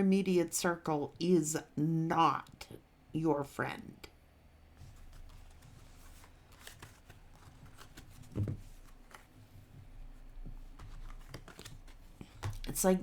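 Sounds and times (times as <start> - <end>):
cards rustling and clicking: 4.9 - 12.9.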